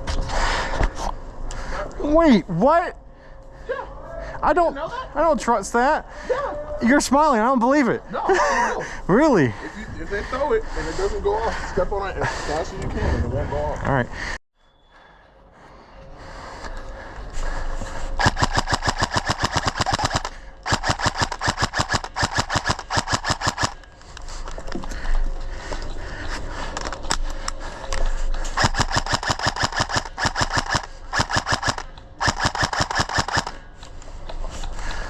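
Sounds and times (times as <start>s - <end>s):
airsoft rifle automatic fire: 18.2s - 23.8s, 28.6s - 33.6s.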